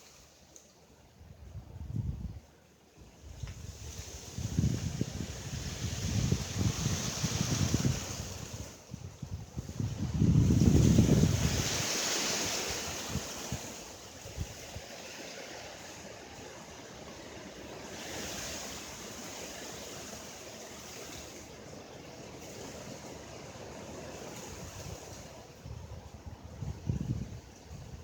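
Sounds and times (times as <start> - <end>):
wind buffeting microphone: 1.2 - 15.0, 22.6 - 28.0
wind gusts rushing: 3.1 - 20.2, 22.2 - 28.0.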